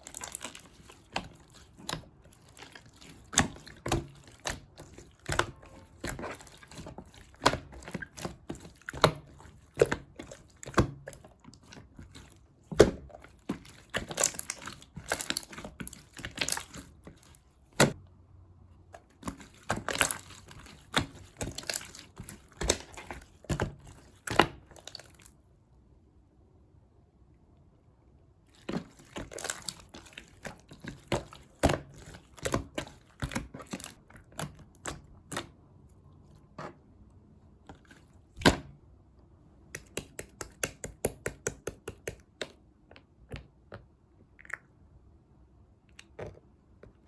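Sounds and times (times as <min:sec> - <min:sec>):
slime squished by hand: 0:00.0 - 0:18.0, 0:18.9 - 0:25.4, 0:28.5 - 0:35.6.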